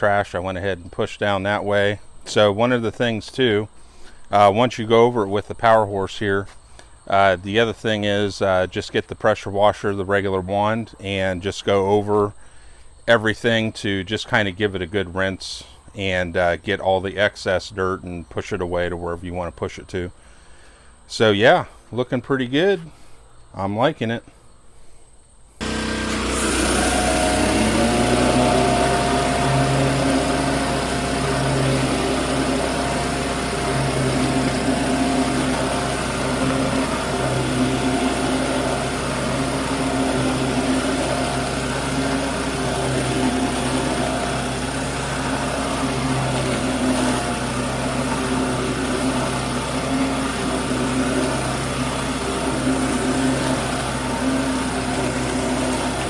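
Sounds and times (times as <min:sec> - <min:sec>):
high-pressure water spray hissing: 0:25.6 - 0:56.0
pressure washer engine running: 0:25.6 - 0:56.0.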